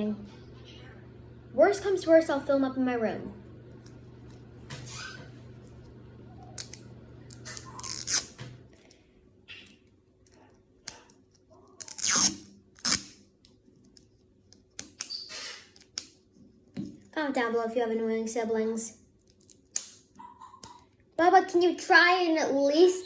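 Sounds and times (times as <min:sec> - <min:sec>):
low steady hum: 0:00.0 - 0:14.8
plastic packaging snipped and torn: 0:06.6 - 0:08.4, 0:11.8 - 0:13.2.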